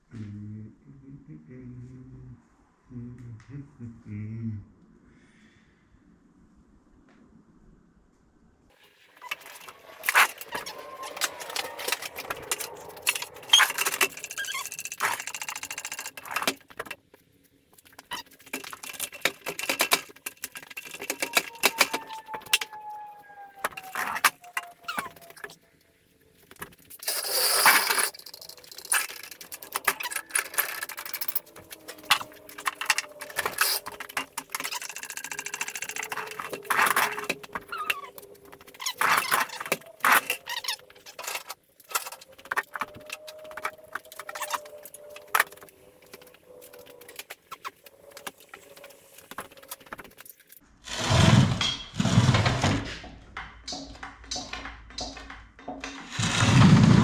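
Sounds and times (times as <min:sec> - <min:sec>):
thin squeak: 0:09.2 - 0:16.5, 0:18.0 - 0:25.6, 0:27.0 - 0:49.2
metal parts clinking: 0:09.2 - 0:17.0, 0:17.8 - 0:22.8, 0:26.5 - 0:50.6
metal scraping rasp: 0:50.9 - 0:53.1, 0:53.7 - 0:57.0.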